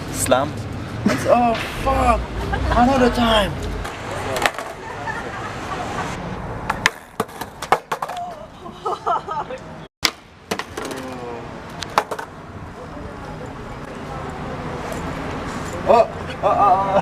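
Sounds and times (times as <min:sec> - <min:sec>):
skateboard clacking on ground: 0:03.8 - 0:04.8, 0:06.6 - 0:08.4, 0:10.0 - 0:12.4
skateboard wheels rolling: 0:03.8 - 0:08.5, 0:10.0 - 0:12.4.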